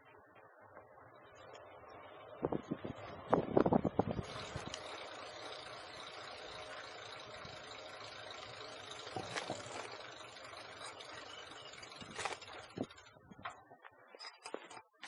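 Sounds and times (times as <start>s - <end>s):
road traffic noise: 0.0s - 14.0s.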